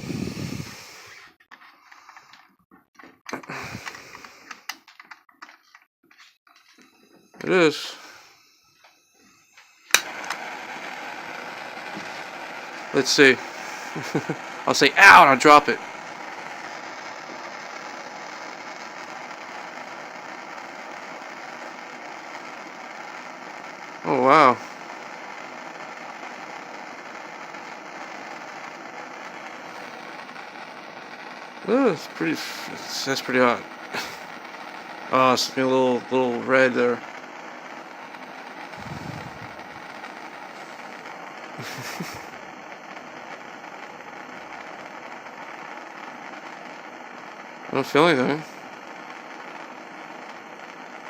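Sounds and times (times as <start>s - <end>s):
gas torch flame whoosh: 0.0s - 1.4s, 9.9s - 23.6s, 24.4s - 46.5s
hissing torch flame: 0.0s - 2.4s, 3.3s - 4.8s, 7.4s - 8.7s, 9.3s - 51.0s.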